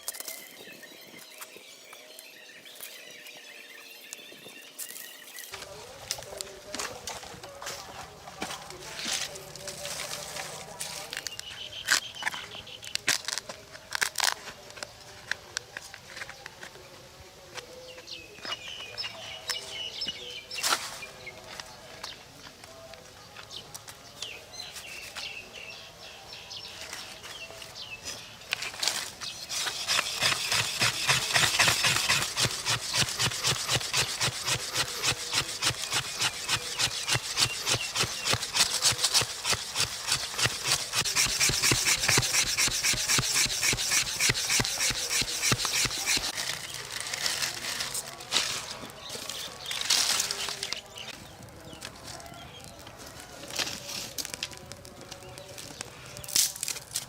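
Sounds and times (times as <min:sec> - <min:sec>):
rhythmic scraping strokes: 0:28.6 - 0:51.2.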